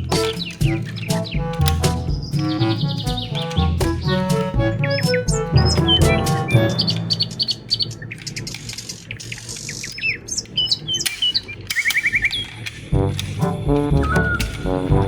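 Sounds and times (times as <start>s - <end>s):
music: 0.0s - 7.8s, 12.9s - 15.0s
birds chirping: 0.0s - 12.7s.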